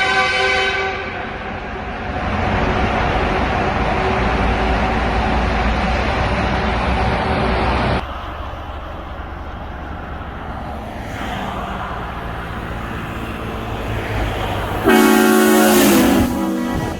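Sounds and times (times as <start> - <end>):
loud train horn blast: 0.0 - 1.8, 14.7 - 16.9
vehicle engine and road noise: 0.0 - 16.9.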